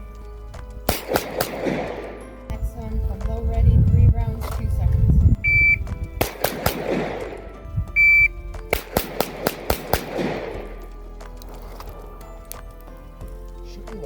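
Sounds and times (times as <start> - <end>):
pistol shots echoing: 0.9 - 2.5, 6.2 - 11.2
shot timer beep: 5.4 - 5.9, 8.0 - 8.3.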